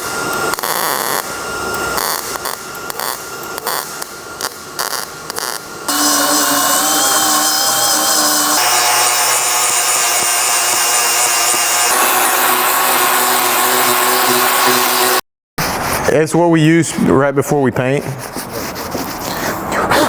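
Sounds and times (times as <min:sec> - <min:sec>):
power tool running on metal: 0:00.0 - 0:15.2
welder crackling: 0:00.3 - 0:15.2.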